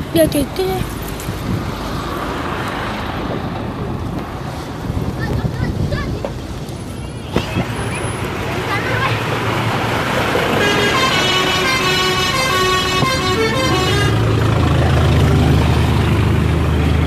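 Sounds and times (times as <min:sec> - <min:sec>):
bus engine drone: 0:00.0 - 0:17.0
musical air horn tune: 0:10.6 - 0:14.3.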